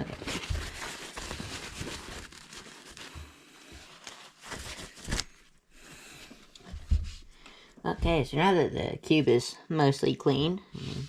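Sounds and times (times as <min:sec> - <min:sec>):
paper towel rustling and crinkling: 0:00.0 - 0:05.5.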